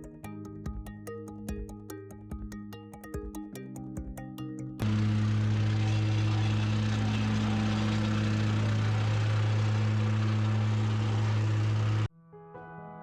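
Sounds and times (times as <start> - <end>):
soft piano music: 0.0 - 4.8, 12.1 - 13.0
engine running steadily: 4.8 - 12.1.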